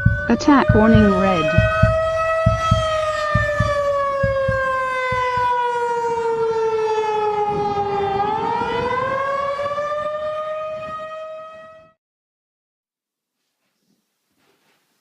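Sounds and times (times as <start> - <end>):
low thumps: 0.0 - 5.6
air-raid siren wailing: 0.0 - 12.0.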